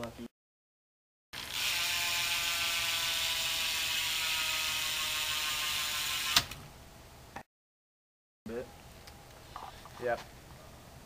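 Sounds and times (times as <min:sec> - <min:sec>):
bike hub ratcheting buzz: 0:01.4 - 0:06.5.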